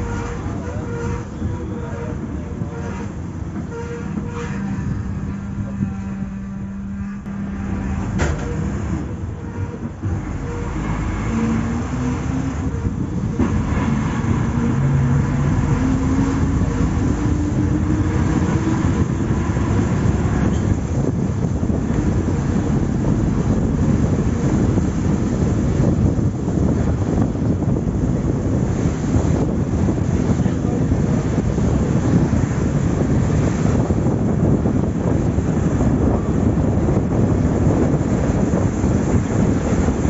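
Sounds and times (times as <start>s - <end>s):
low road rumble: 0.0s - 40.0s
vehicle engine accelerating: 10.0s - 30.3s.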